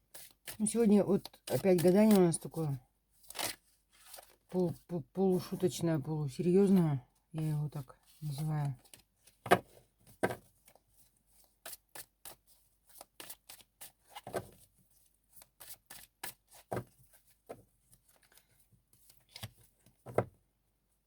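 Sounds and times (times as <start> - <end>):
cards being shuffled: 0.2 - 2.6, 3.2 - 4.4.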